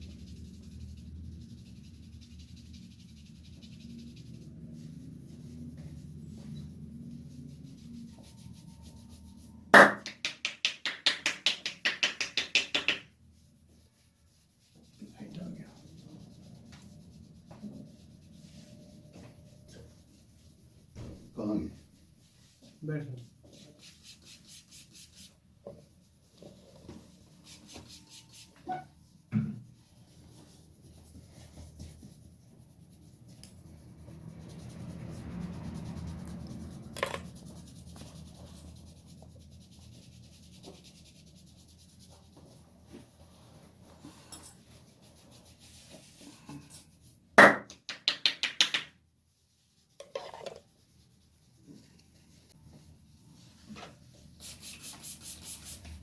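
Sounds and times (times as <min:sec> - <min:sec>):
hands rubbing scalp and hair: 0:00.0 - 0:56.0
light pats on head: 0:09.8 - 0:13.1.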